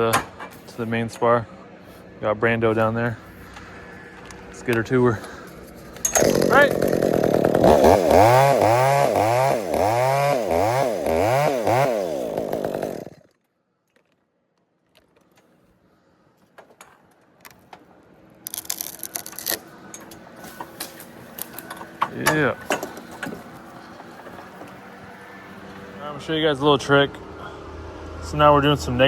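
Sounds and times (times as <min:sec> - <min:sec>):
chainsaw cutting: 0:05.2 - 0:13.3.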